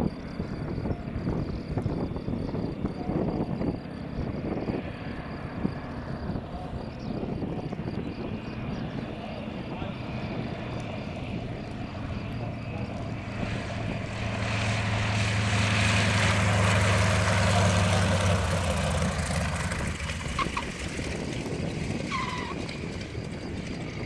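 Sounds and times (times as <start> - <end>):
propeller aircraft engine drone: 0.0 - 24.0
tyre squeals: 22.0 - 22.8.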